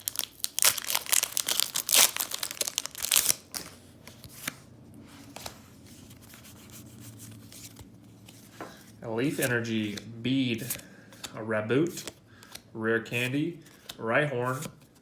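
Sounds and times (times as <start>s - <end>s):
foil wrapper crinkling and tearing: 0.0s - 3.8s.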